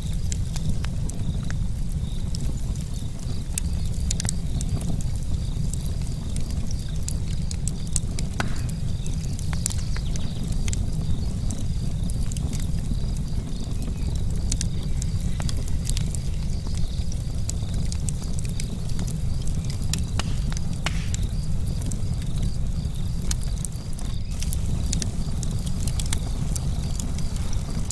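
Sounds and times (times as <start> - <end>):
burning wood crackling: 0.0 - 27.9
low steady rumble: 24.2 - 27.9.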